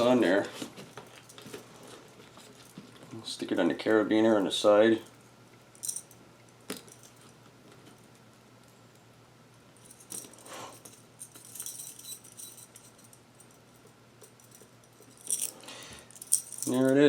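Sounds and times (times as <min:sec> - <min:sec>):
key ring jingling: 0:05.8 - 0:06.2, 0:09.8 - 0:17.0.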